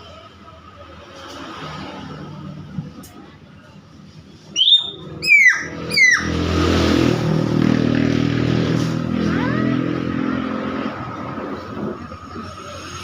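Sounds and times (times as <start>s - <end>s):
myna calling: 4.6s - 6.4s.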